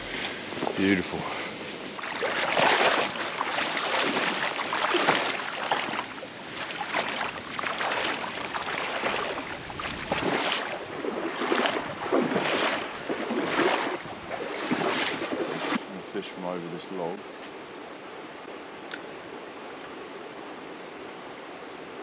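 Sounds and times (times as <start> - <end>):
legs wading through water: 0.0 - 16.0.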